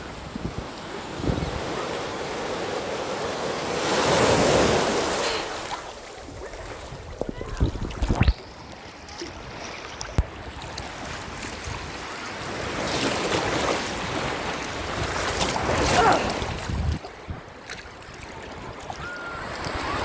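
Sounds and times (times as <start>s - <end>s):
wind buffeting microphone: 0.0s - 1.9s, 6.2s - 8.7s, 10.2s - 20.0s
ocean wave rushing in: 0.9s - 6.0s.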